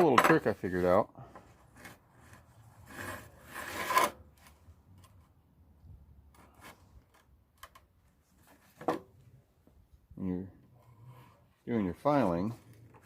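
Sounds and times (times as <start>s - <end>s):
file rasping on steel blade: 1.8s - 4.2s.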